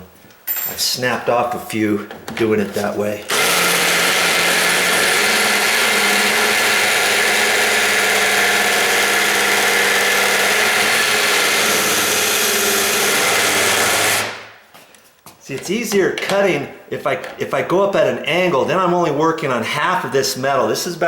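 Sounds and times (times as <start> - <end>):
electric drill cutting metal: 3.3 - 14.5.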